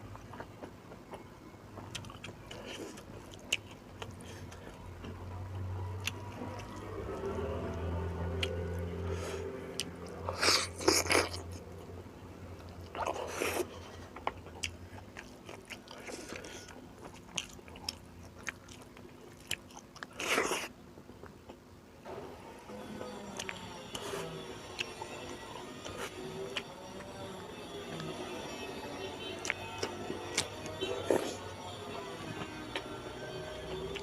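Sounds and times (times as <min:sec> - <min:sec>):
person chewing food: 0:00.0 - 0:11.8, 0:12.5 - 0:21.7, 0:29.4 - 0:31.6, 0:33.7 - 0:34.0.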